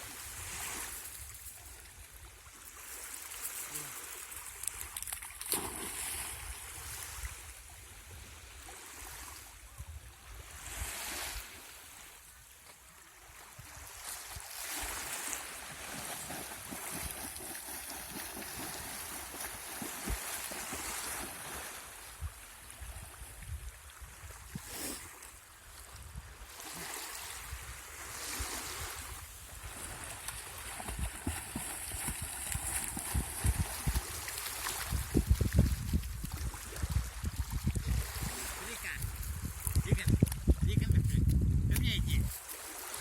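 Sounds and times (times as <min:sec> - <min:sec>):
sea water washing and splashing: 0:02.7 - 0:07.6, 0:13.6 - 0:23.0, 0:26.5 - 0:39.5
wind rumbling on microphone: 0:18.1 - 0:24.7, 0:27.4 - 0:42.4.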